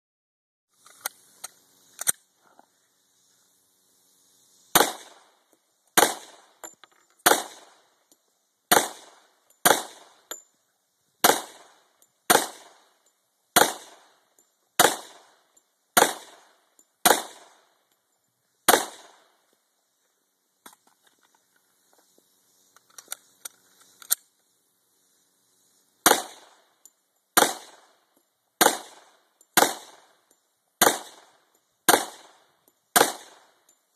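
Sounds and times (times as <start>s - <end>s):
pistol shots: 4.7s - 5.3s, 6.0s - 6.5s, 7.2s - 7.8s, 8.7s - 10.2s, 11.2s - 12.9s, 13.6s - 14.2s, 14.8s - 15.4s, 16.0s - 17.6s, 18.7s - 19.2s, 26.0s - 26.6s, 27.4s - 27.9s, 28.6s - 30.1s, 30.8s - 32.4s, 33.0s - 33.5s.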